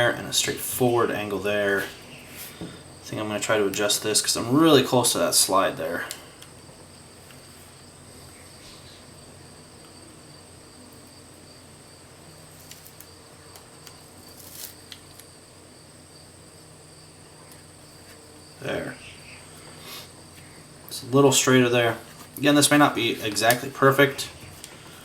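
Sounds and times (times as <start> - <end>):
steady high-pitched whine: 0.0 - 25.0
small ticks and rubs of grip wrap: 12.5 - 15.3.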